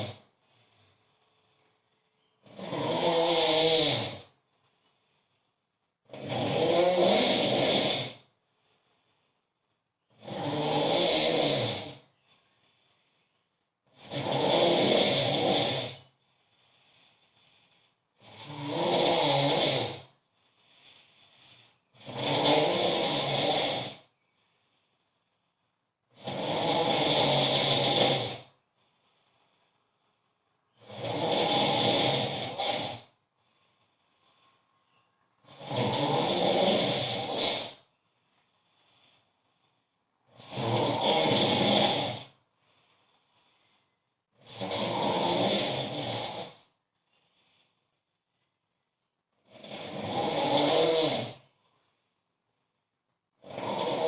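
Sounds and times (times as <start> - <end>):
man snoring loudly: 0.0 - 0.8, 2.4 - 4.4, 6.0 - 8.4, 10.1 - 12.8, 13.8 - 24.2, 26.1 - 28.6, 30.8 - 33.2, 35.4 - 37.9, 40.2 - 42.4, 43.1 - 47.7, 49.4 - 51.6, 53.4 - 54.0
faint breath: 0.0 - 2.5, 4.3 - 6.1, 8.2 - 10.2, 12.0 - 14.0, 16.0 - 18.4, 20.0 - 22.0, 24.0 - 26.2, 28.5 - 30.9, 33.0 - 35.5, 37.7 - 40.4, 42.2 - 44.4, 46.5 - 49.6, 51.4 - 53.2.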